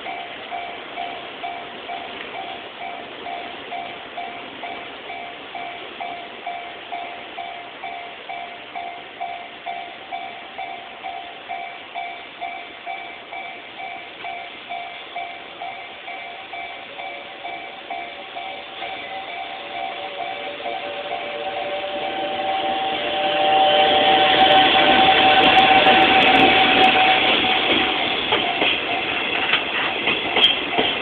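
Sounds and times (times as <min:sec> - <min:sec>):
level crossing bell clanging: 0:00.0 - 0:23.0, 0:24.5 - 0:31.0
lower-pitched tone: 0:00.0 - 0:31.0.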